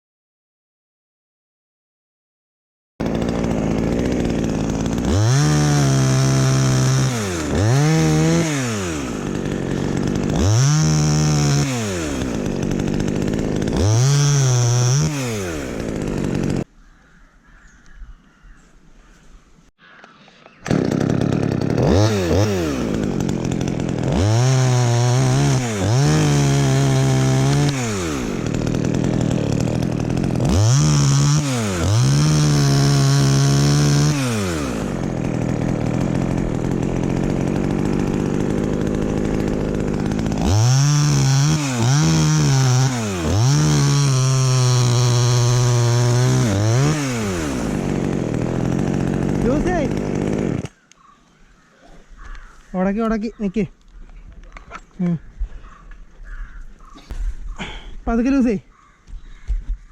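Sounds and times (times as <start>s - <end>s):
chainsaw revving and idling: 3.0s - 16.7s, 20.6s - 50.8s.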